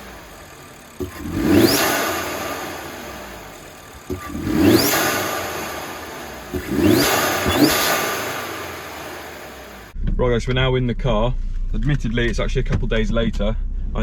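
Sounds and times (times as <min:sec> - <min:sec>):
car engine revving with whistle: 0:00.0 - 0:09.9.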